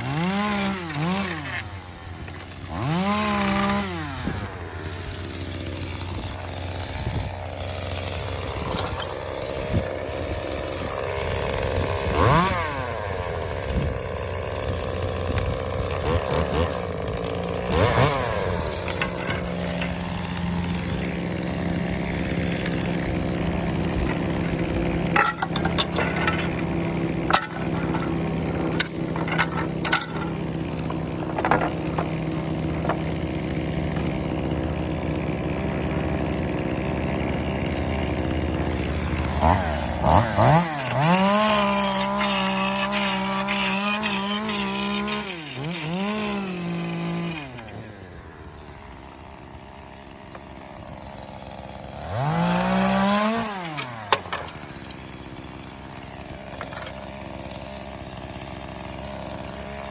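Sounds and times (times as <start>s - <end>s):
chainsaw revving: 0.0s - 59.9s
sharp knocks: 25.1s - 34.2s.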